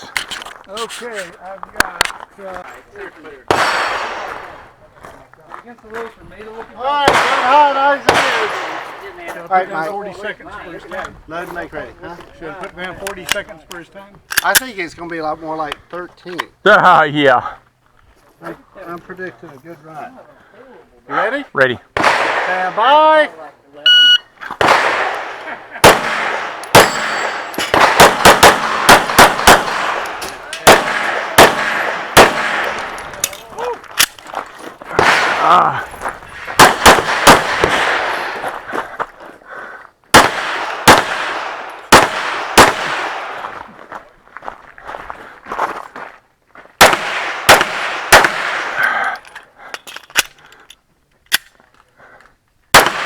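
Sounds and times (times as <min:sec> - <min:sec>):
pistol shots echoing: 0:03.5 - 0:04.7, 0:07.0 - 0:09.0, 0:22.0 - 0:22.8, 0:24.6 - 0:33.3, 0:35.0 - 0:35.6, 0:36.5 - 0:38.4, 0:40.1 - 0:43.5, 0:46.8 - 0:48.8, 0:52.8 - 0:53.0.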